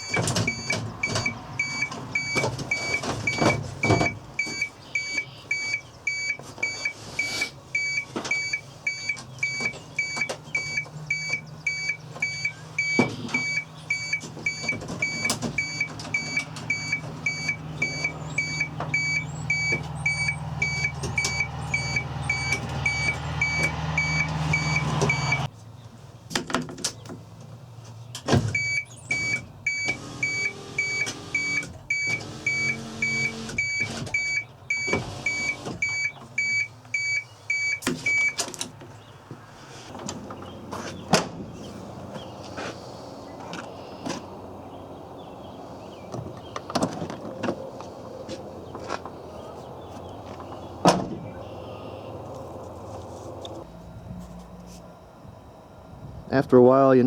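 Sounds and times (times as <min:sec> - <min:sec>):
vehicle warning chime beeping: 0:00.0 - 0:25.5, 0:28.6 - 0:38.5, 0:50.2 - 0:57.0
low motor hum: 0:09.3 - 0:25.5, 0:40.0 - 0:56.6.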